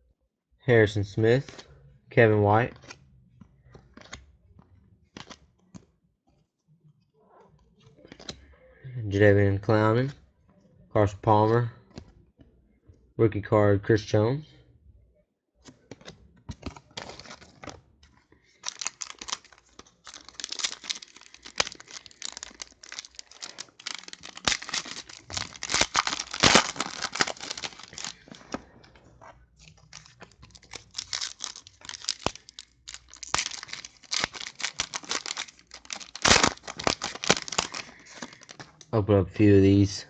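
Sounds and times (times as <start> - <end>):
wrappers tearing and crinkling: 16.6 - 17.8, 18.5 - 28.8, 29.6 - 38.9.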